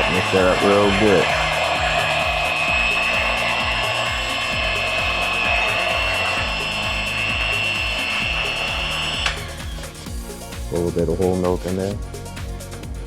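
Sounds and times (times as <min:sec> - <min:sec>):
electric hand mixer whining: 0:00.0 - 0:10.4.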